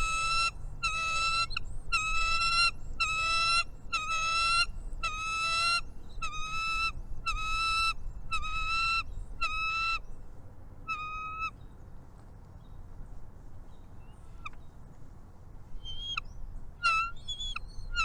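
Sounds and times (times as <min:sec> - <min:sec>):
nasal honking bird calls: 0:15.8 - 0:18.0.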